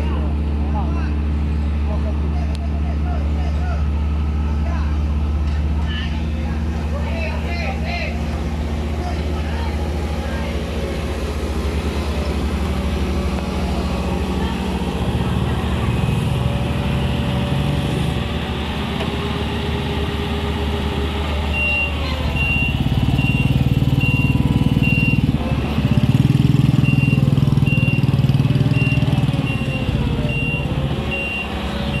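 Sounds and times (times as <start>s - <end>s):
heavy vehicle engine running: 0.0s - 32.0s
reversing beeper: 21.5s - 32.0s.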